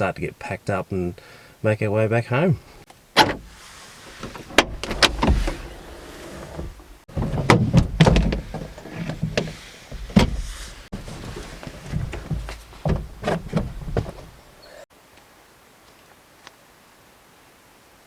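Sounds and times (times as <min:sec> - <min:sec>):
knocks and clicks of latches: 0:03.2 - 0:03.5, 0:04.2 - 0:10.6, 0:11.9 - 0:14.4.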